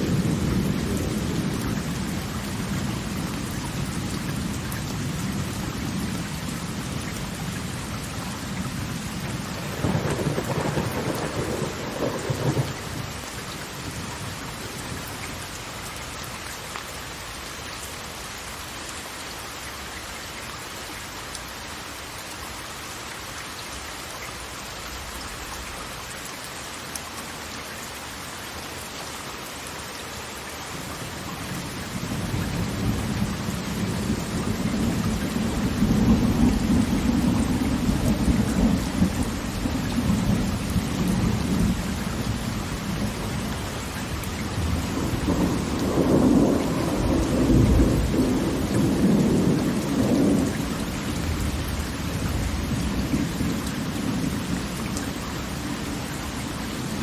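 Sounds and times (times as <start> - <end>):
steady rain: 0.0 - 57.0
rolling thunder: 9.2 - 13.2, 32.1 - 43.7, 44.4 - 54.6.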